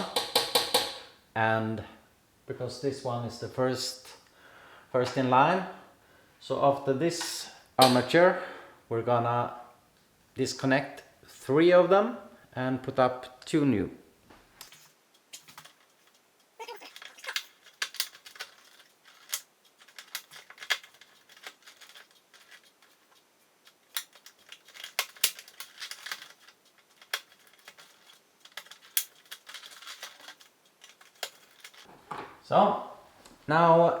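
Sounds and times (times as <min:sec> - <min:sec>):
clicks and snips of wiring work: 0:14.6 - 0:32.2.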